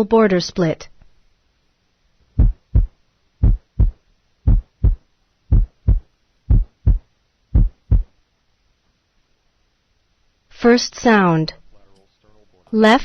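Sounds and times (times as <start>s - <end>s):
heartbeat through stethoscope: 2.4s - 8.1s.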